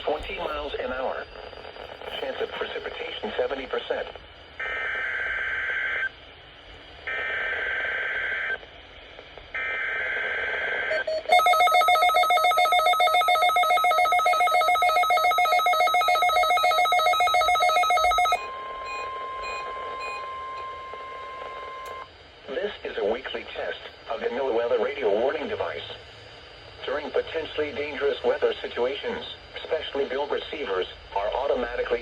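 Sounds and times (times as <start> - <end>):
rapidly pulsing electronic beep: 10.8 - 22.1
steady warning alarm tone: 10.9 - 23.0.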